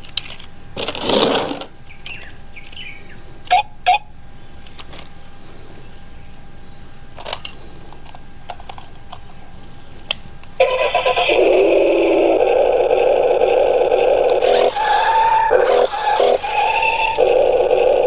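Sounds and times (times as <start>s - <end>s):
toy car electric motor whirring: 0.8s - 1.7s, 10.7s - 18.0s.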